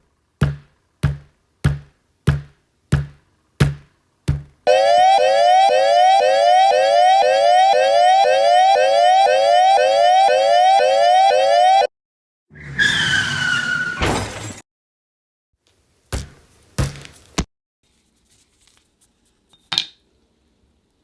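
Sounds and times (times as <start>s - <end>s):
electronic siren yelping: 4.7s - 11.9s.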